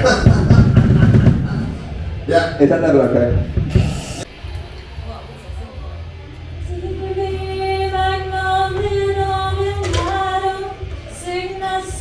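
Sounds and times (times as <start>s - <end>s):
low hum: 0.0s - 12.0s
singer holding wordless notes: 4.2s - 12.0s.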